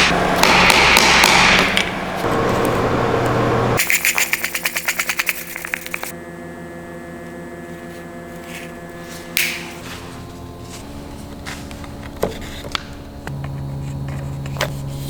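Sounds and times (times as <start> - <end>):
steady hum: 0.0 - 15.0.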